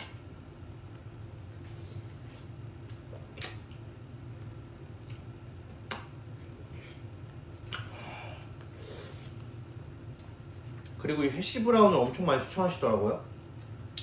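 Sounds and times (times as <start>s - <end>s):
steady low hum: 0.0s - 14.0s
eating clicks from utensils and mouth: 2.9s - 3.8s, 5.9s - 6.2s.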